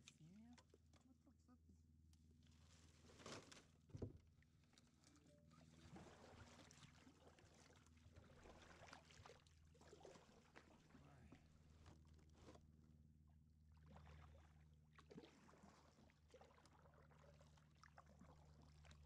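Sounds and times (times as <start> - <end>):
paddle splashing in water: 4.6 - 12.6, 13.8 - 19.0.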